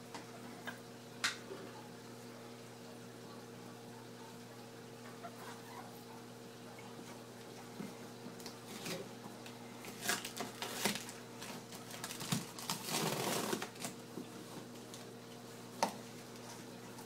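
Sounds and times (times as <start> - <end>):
packaging crinkling: 9.8 - 14.0
packaging clicks and rustles: 10.0 - 14.0.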